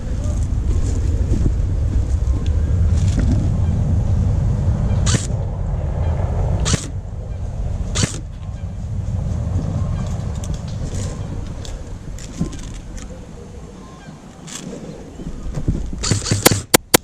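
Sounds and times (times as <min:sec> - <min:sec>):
wind rumbling on microphone: 0:00.0 - 0:17.0
sharp cracks: 0:05.0 - 0:05.5, 0:06.6 - 0:07.0, 0:07.8 - 0:08.5, 0:15.8 - 0:17.0.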